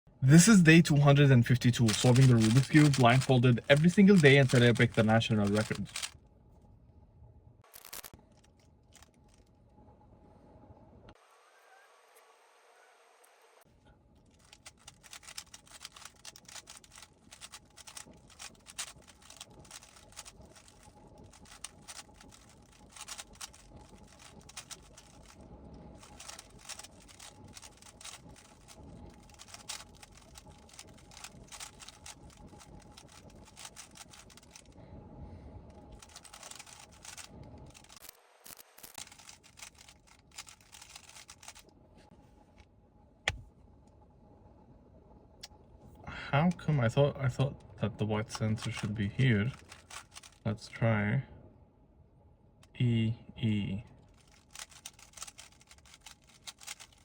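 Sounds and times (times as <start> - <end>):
puzzle cube plastic clicks: 1.5 - 6.2, 14.4 - 34.8, 35.9 - 38.1, 38.8 - 41.7, 48.4 - 50.4, 54.1 - 57.0.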